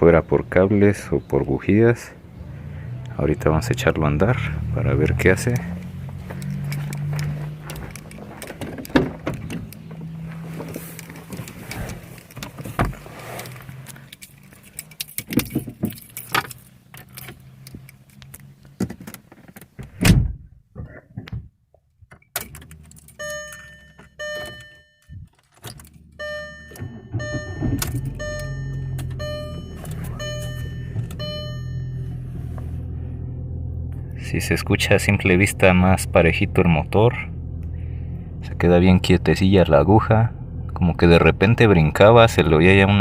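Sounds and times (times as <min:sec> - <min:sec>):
car engine starting and idling: 0:00.0 - 0:19.8, 0:22.4 - 0:43.0
car warning chime dinging: 0:23.1 - 0:25.2, 0:26.0 - 0:32.4.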